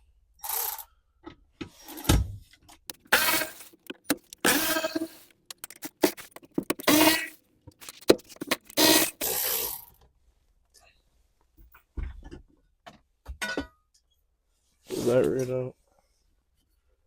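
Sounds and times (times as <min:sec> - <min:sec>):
sharp clicks: 0:02.9 - 0:09.2
hand tools rasping: 0:02.9 - 0:09.3.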